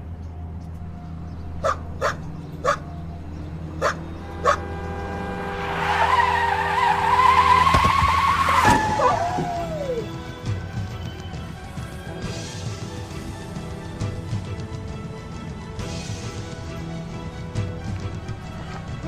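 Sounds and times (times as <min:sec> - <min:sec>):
car tyres screeching: 0:00.0 - 0:19.0
dog barking: 0:01.6 - 0:02.9, 0:03.8 - 0:04.7.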